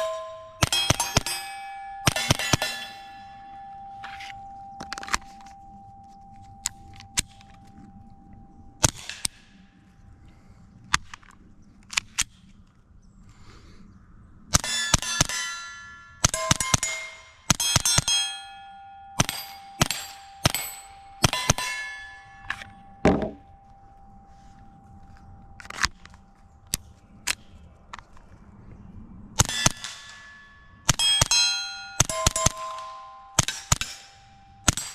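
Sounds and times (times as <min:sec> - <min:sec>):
steel target ringing: 0:00.0 - 0:07.4, 0:14.6 - 0:23.8, 0:29.4 - 0:34.9.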